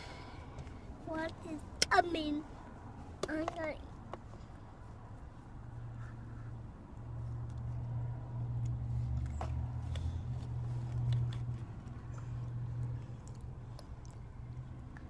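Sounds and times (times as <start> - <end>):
child chewing crunchy food: 8.6 - 15.0.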